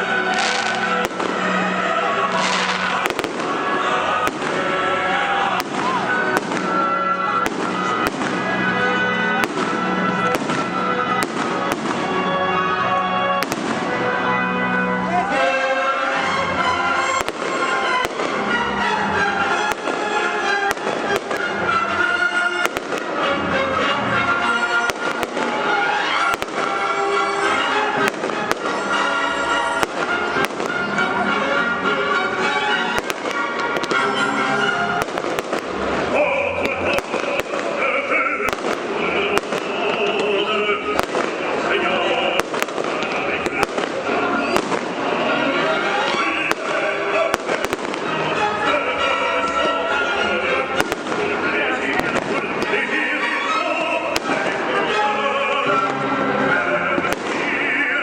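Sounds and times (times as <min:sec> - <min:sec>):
fireworks bangs: 0:00.0 - 0:14.6, 0:17.0 - 0:31.8, 0:32.7 - 0:49.8, 0:50.5 - 0:55.0, 0:55.8 - 0:58.0
music with long held notes: 0:00.0 - 0:58.0.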